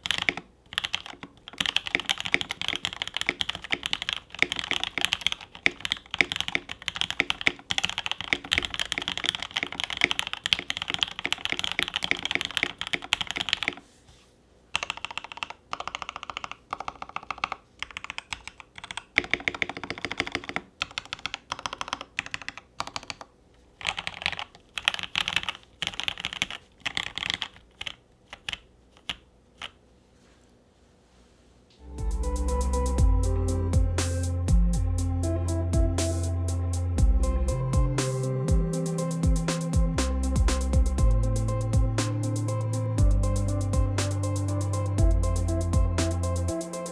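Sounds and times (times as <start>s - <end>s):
typing on mechanical keyboard: 0.0s - 13.8s, 14.7s - 29.8s.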